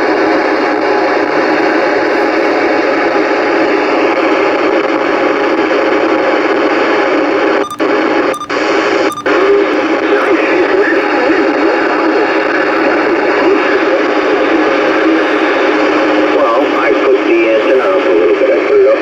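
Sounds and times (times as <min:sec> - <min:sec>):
radio static hiss: 0:07.8 - 0:19.0.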